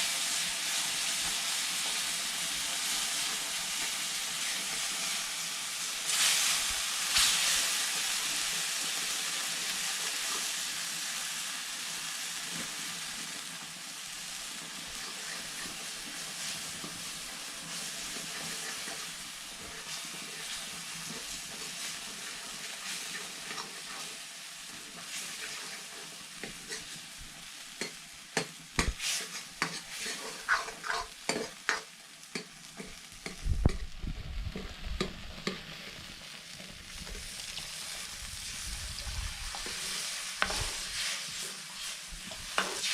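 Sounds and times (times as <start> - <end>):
food sizzling in a pot: 0.0 - 42.9
utensil scraping a pot: 14.8 - 16.9, 17.7 - 24.2, 25.0 - 27.0, 28.8 - 31.8.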